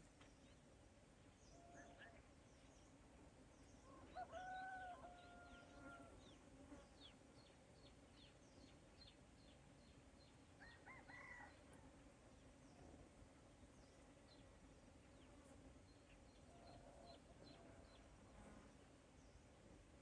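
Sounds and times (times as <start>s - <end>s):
rooster crowing: 3.9s - 6.2s, 10.6s - 11.8s.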